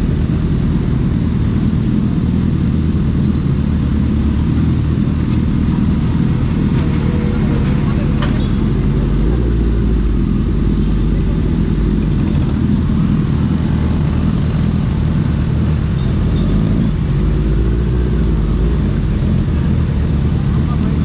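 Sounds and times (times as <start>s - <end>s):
motorcycle engine cruising: 0.0s - 21.0s.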